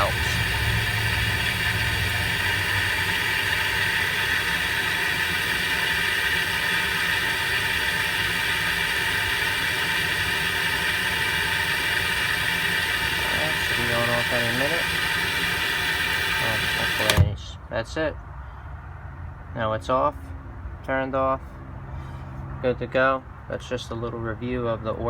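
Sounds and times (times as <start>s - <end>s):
water running through garden hose: 0.0s - 17.2s.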